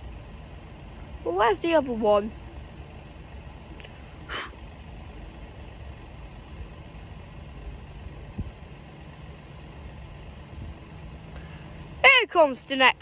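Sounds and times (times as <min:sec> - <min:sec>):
engines idling: 0:00.0 - 0:13.0.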